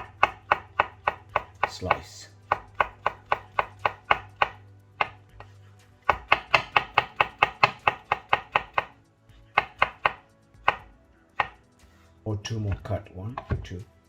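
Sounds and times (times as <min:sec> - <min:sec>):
knife strikes on cutting board: 0:00.0 - 0:05.2, 0:06.1 - 0:08.9, 0:09.6 - 0:11.6.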